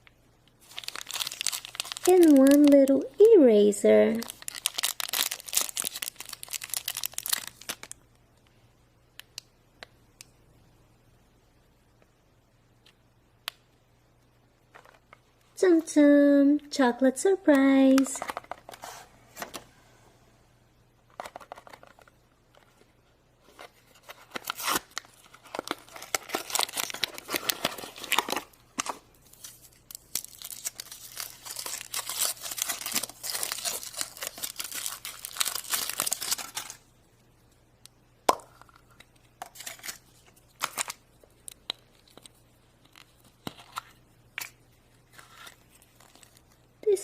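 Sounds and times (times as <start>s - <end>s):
wrapper tearing and crinkling: 0.6s - 2.9s, 4.2s - 8.0s, 23.6s - 36.9s, 39.4s - 43.8s, 45.1s - 46.6s.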